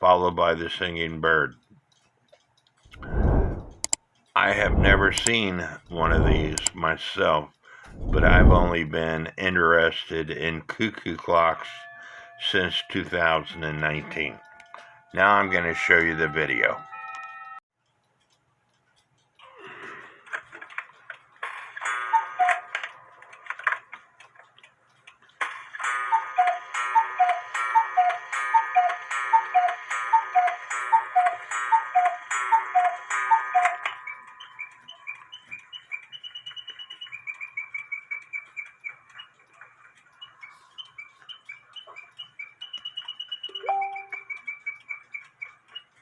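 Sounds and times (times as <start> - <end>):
cuckoo clock calls: 11.2 - 17.6, 21.8 - 23.2, 25.6 - 46.0
mechanical bird chirping whistle: 22.0 - 22.8, 26.0 - 39.5, 40.1 - 46.0.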